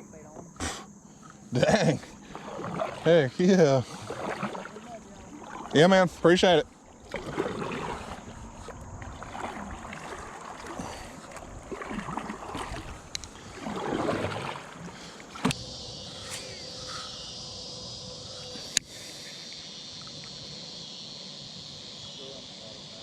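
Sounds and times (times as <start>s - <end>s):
paddle swishing in water: 1.2s - 19.1s.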